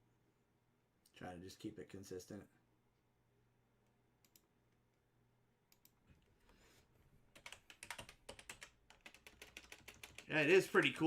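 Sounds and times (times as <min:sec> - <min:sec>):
computer keyboard typing: 0:07.3 - 0:11.0.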